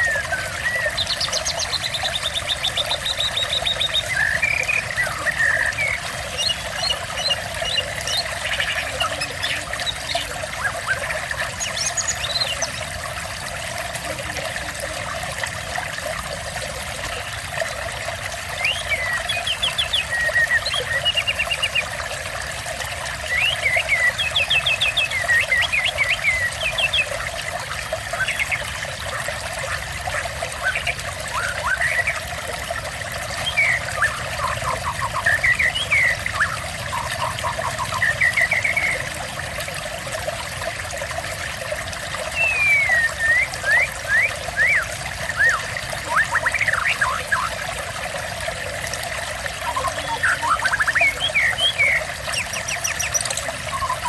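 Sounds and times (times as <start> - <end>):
songbird singing: 0.0 - 12.9, 18.6 - 21.9, 23.2 - 27.2, 30.6 - 32.2, 33.2 - 39.1, 42.3 - 47.6, 49.6 - 54.0
water trickling: 0.0 - 54.0.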